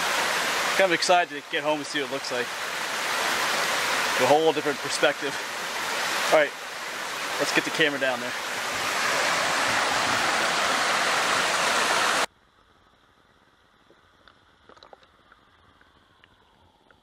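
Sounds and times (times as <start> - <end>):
rushing creek water: 0.0 - 12.3
faint ticks and taps underwater: 13.7 - 17.0.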